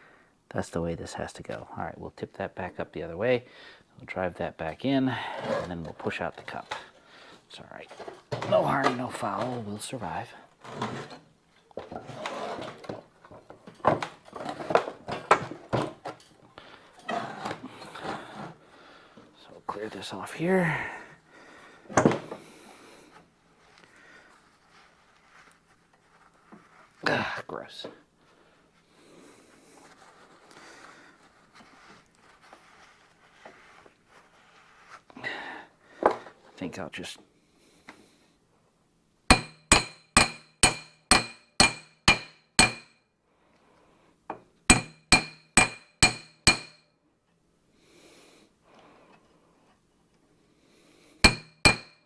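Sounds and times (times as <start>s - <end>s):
rubbing and rustling: 23.2s - 27.1s, 28.7s - 35.2s
sharp knocks: 39.3s - 42.9s.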